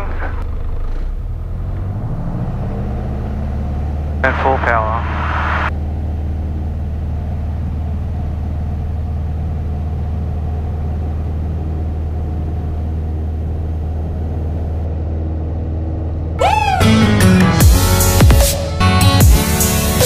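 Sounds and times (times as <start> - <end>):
aircraft engine drone in cabin: 3.7 - 18.8
electronic music: 16.4 - 20.0.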